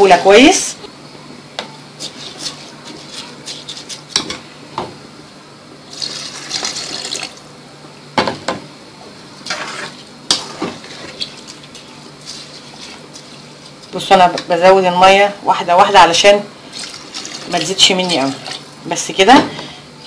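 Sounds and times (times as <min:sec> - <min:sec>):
water pouring into pot: 0:05.9 - 0:07.4, 0:16.8 - 0:17.8.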